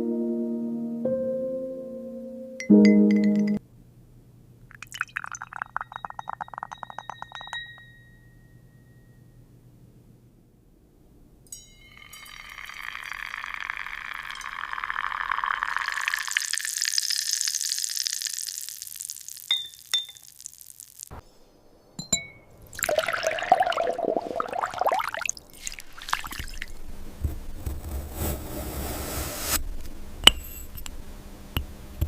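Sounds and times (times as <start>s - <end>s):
glass clinks: 2.6s - 3.6s, 5.3s - 9.4s, 11.5s - 13.5s, 19.5s - 20.3s, 22.0s - 23.5s
liquid pouring onto glass: 4.7s - 7.4s, 11.9s - 20.8s, 22.7s - 26.7s
crackling crunching glass: 12.0s - 21.2s.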